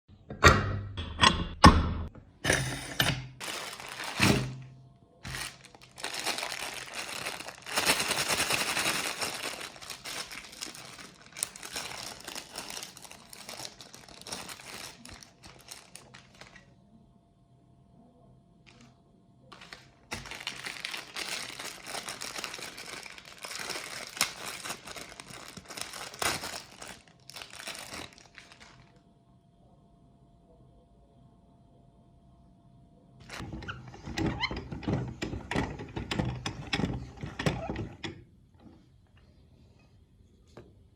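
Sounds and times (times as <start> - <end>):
plastic wrapper crinkling: 3.4 - 16.7, 19.5 - 29.0, 33.2 - 33.5.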